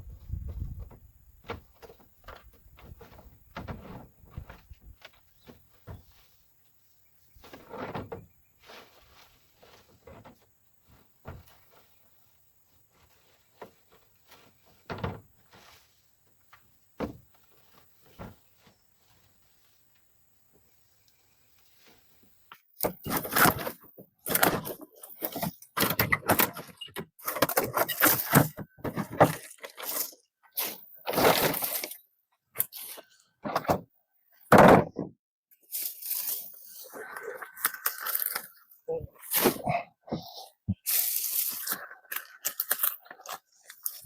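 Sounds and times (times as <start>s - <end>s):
branches knocking and thumping: 0.3s - 6.3s, 12.9s - 19.4s, 21.8s - 32.0s.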